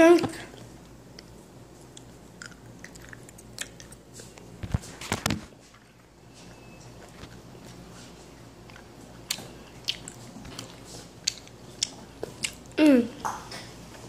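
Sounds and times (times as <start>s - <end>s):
person chewing candy: 1.9s - 4.5s, 8.6s - 12.8s.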